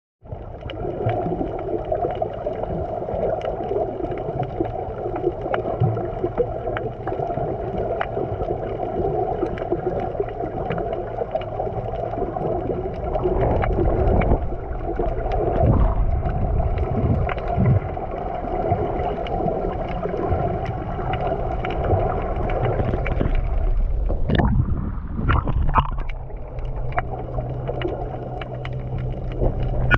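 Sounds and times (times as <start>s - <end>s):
water splashing: 0.4s - 29.9s
boat engine running: 20.0s - 29.9s.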